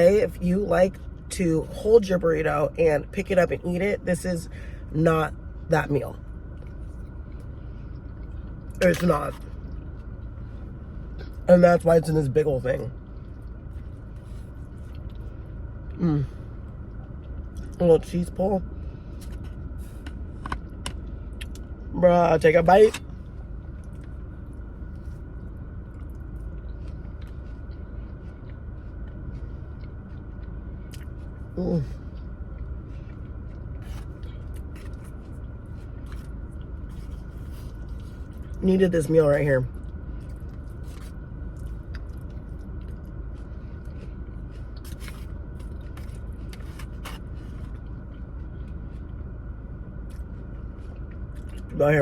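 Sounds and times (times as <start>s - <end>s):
low background hum: 0.0s - 52.0s
chewing food: 12.9s - 17.8s, 23.3s - 38.6s, 39.7s - 49.3s, 49.9s - 51.8s.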